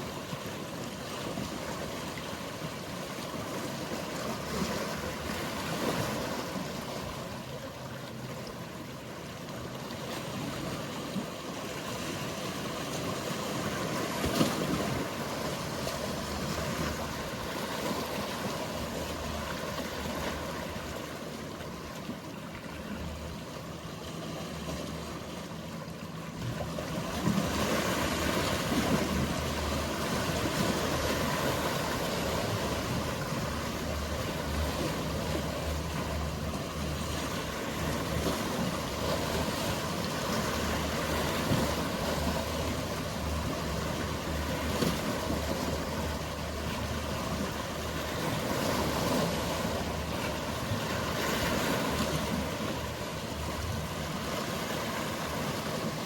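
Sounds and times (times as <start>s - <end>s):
boat engine hum: 0.0s - 56.0s
sea waves washing: 0.0s - 56.0s.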